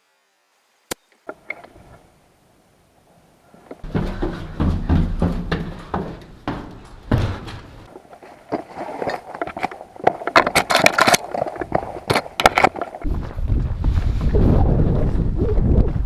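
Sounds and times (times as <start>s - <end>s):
clicks and rustles: 3.6s - 13.1s
wind buffeting microphone: 11.5s - 16.0s.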